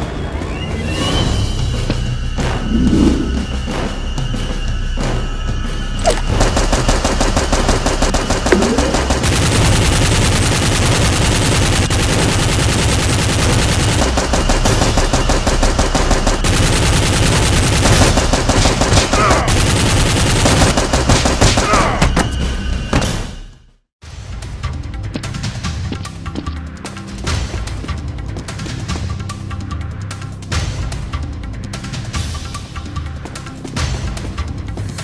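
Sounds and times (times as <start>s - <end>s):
machine-gun fire: 6.3s - 21.9s.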